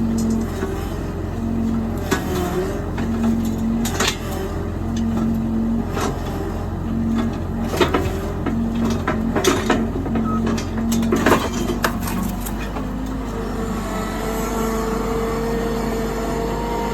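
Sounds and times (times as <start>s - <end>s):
engine running: 0.0s - 16.9s
metal clanks and knocks: 7.2s - 13.0s.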